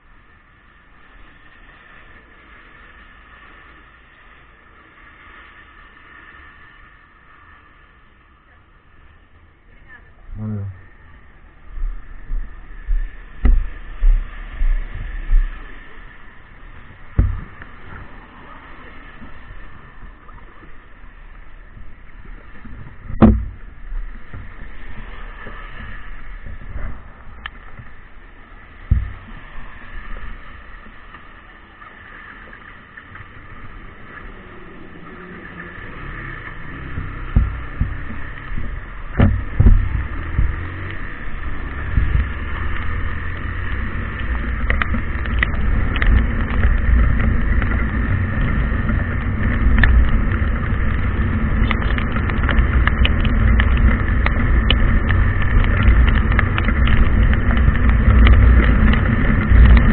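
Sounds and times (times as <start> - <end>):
vehicle rumbling: 0.0 - 59.9
scattered clicks: 44.2 - 59.9.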